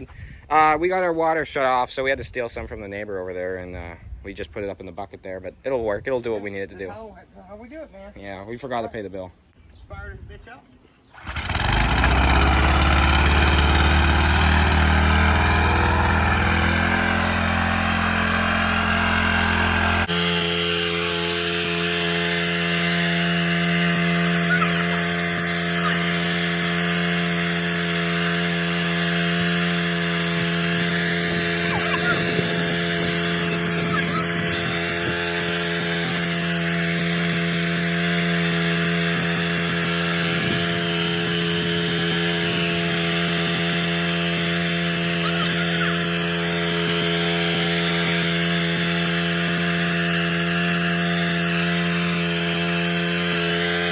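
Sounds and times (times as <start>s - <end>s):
pressure washer gas engine running: 11.2s - 53.9s.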